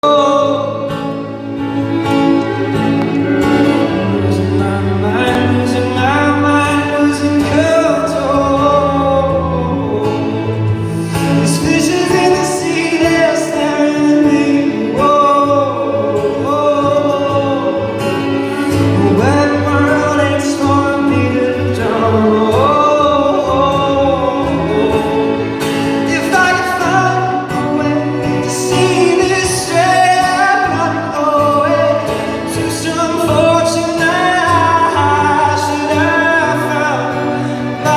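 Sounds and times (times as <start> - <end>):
man singing slow song: 0.0 - 37.9
sustained instrumental accompaniment: 0.0 - 37.9.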